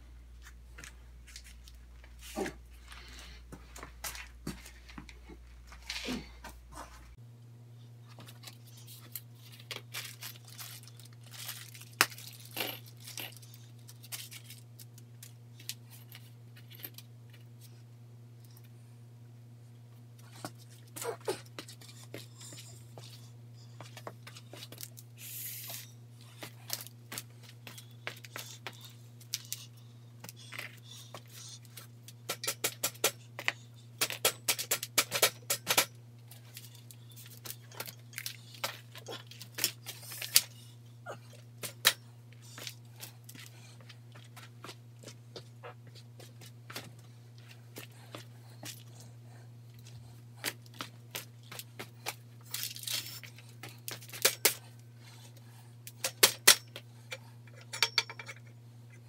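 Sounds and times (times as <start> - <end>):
steady low hum: 0.0 - 59.0
metal parts clicking and knocking: 55.9 - 58.5.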